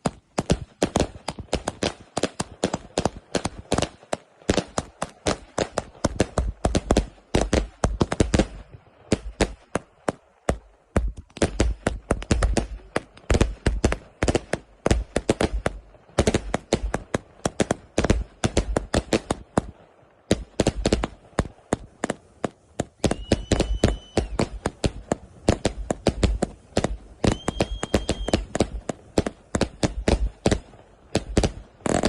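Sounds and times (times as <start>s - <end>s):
firework bangs and cracks: 0.0s - 32.0s
steady whistle: 23.0s - 24.4s, 27.3s - 28.5s.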